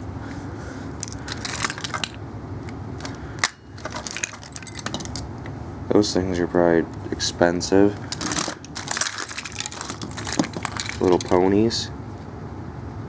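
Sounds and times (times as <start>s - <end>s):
low background hum: 0.0s - 13.0s
plastic toys clattering: 1.0s - 5.4s, 7.9s - 11.8s.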